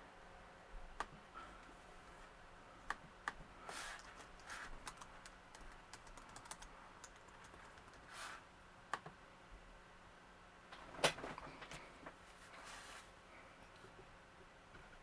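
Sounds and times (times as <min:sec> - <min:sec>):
computer keyboard typing: 0:04.0 - 0:08.1.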